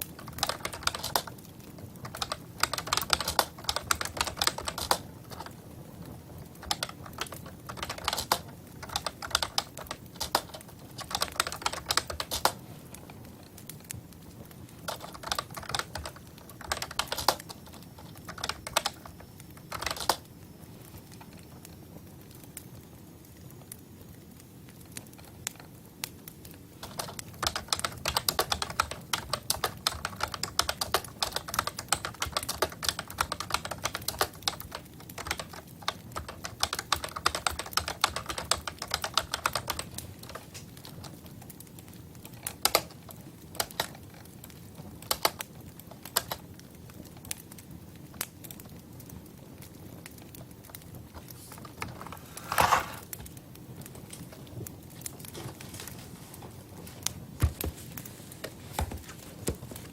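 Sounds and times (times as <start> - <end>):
typing on computer keyboard: 0.1 - 1.3, 2.0 - 5.5, 6.6 - 12.6, 14.8 - 20.3, 26.8 - 41.2, 42.3 - 42.9, 43.6 - 44.0, 45.0 - 46.4.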